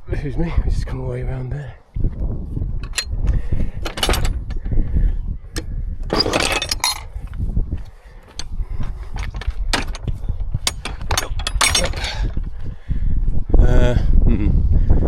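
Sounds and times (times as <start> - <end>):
wind and handling rumble: 0.0 - 15.0
metal gate and latch clinking: 2.8 - 3.2, 3.8 - 4.8, 5.6 - 7.4, 9.1 - 12.4.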